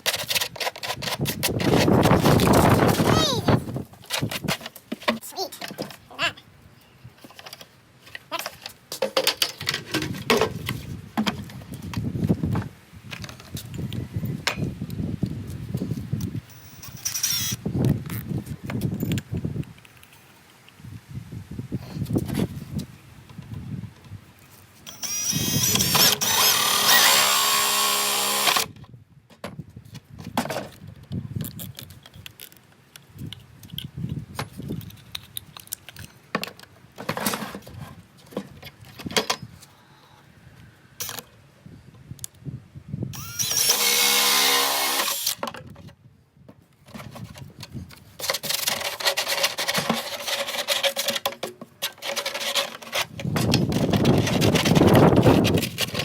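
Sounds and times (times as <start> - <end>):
electric drill running: 16.5 - 17.6, 24.9 - 28.7, 43.2 - 45.4.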